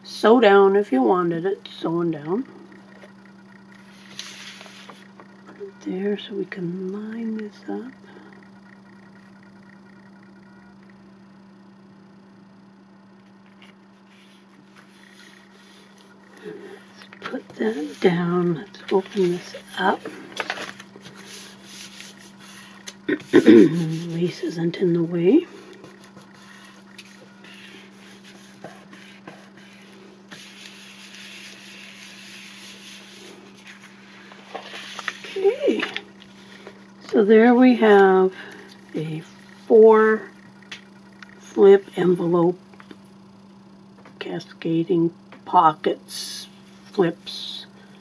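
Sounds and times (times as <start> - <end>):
low electrical hum: 0.0 - 48.0
paper rustling and rubbing: 3.8 - 5.2, 13.4 - 16.1, 16.8 - 18.2, 18.8 - 24.5, 25.5 - 36.8.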